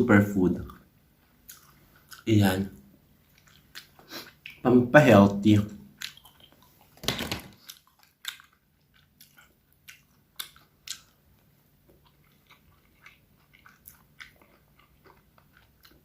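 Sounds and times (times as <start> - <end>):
person chewing: 0.6 - 2.3, 3.0 - 4.6, 5.9 - 7.0, 7.6 - 16.0.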